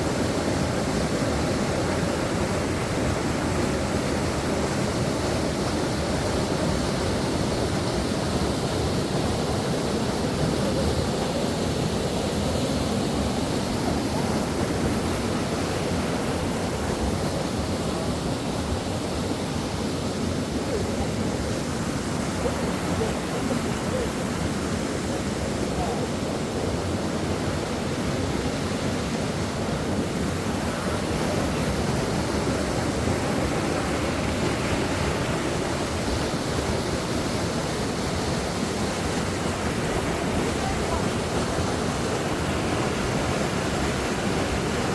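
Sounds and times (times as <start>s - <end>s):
stream rushing over rocks: 0.0s - 44.9s.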